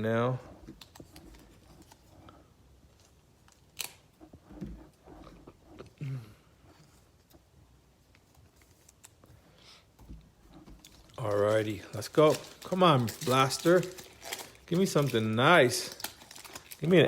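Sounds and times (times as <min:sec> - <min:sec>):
card wrappers rustling: 0:10.8 - 0:17.0.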